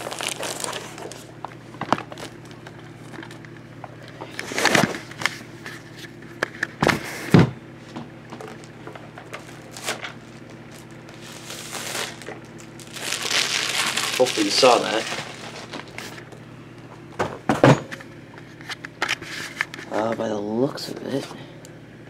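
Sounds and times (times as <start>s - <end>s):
plastic wrap rustling: 0.0s - 3.4s, 8.4s - 16.3s.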